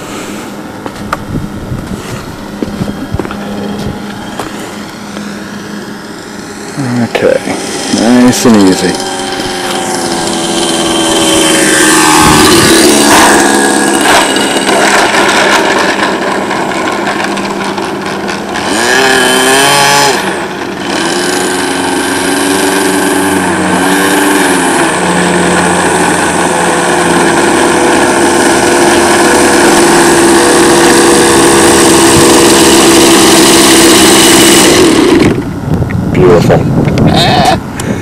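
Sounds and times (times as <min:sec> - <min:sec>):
model plane engine running: 0:00.0 - 0:38.0.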